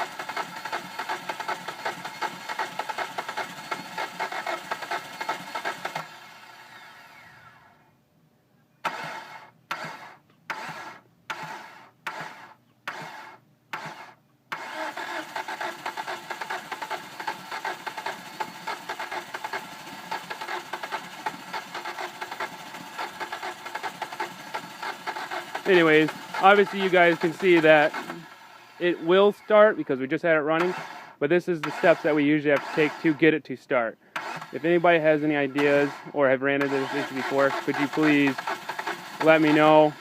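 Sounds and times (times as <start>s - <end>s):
starter motor bursts: 0.0s - 7.9s, 8.8s - 33.3s, 34.0s - 40.0s
car engine running: 15.0s - 29.1s, 34.4s - 40.0s.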